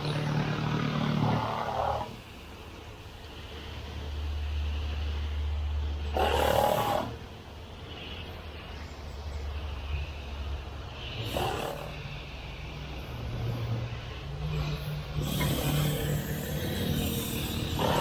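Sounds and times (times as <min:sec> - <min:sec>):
small engine running: 0:00.0 - 0:02.2, 0:11.0 - 0:18.0.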